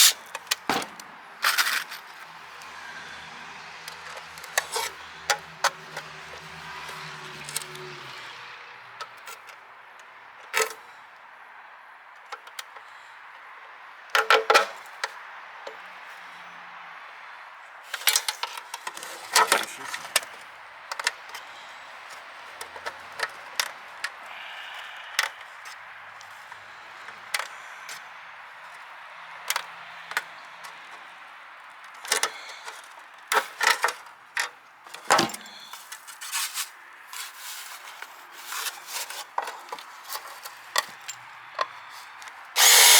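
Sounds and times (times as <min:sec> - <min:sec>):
clicks and clatter of tools: 0:00.0 - 0:02.2, 0:17.9 - 0:21.5, 0:22.6 - 0:24.2, 0:29.5 - 0:30.3, 0:31.8 - 0:42.9.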